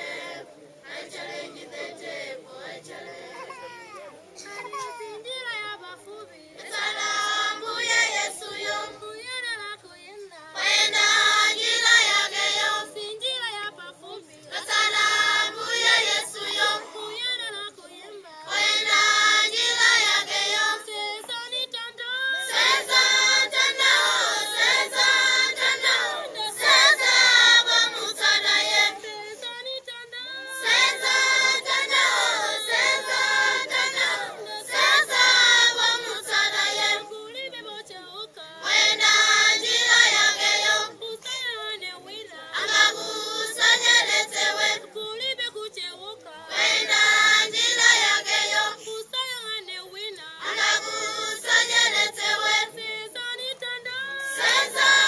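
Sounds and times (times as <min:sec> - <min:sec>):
children singing: 0:22.4 - 0:29.3, 0:30.4 - 0:37.0, 0:54.2 - 0:55.0.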